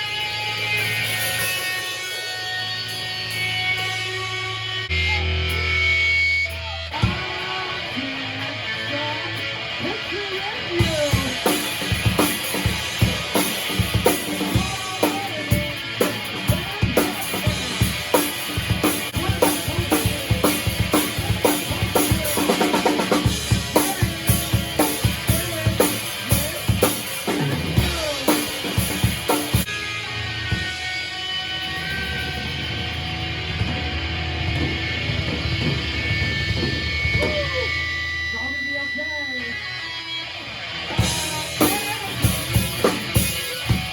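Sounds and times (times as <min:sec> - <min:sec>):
drum kit playing: 0:00.0 - 0:04.4, 0:09.4 - 0:38.4, 0:40.4 - 0:43.9
electric guitar: 0:00.0 - 0:43.9.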